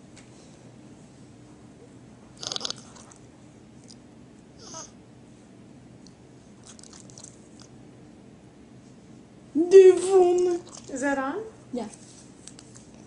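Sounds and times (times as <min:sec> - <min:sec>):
pig chewing with crisp crunches: 0:02.4 - 0:04.0, 0:06.4 - 0:07.8, 0:10.1 - 0:11.2.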